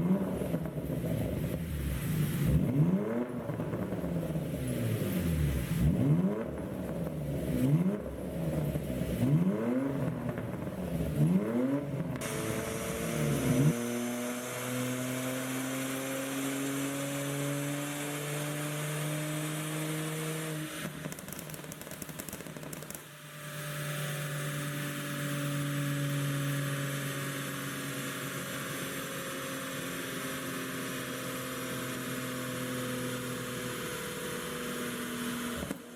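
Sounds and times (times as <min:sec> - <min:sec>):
exhaust popping: 0:00.0 - 0:13.8, 0:20.8 - 0:23.2
car engine revving: 0:00.0 - 0:21.8, 0:22.4 - 0:28.9
steady rising whine: 0:10.6 - 0:16.0, 0:23.2 - 0:29.2.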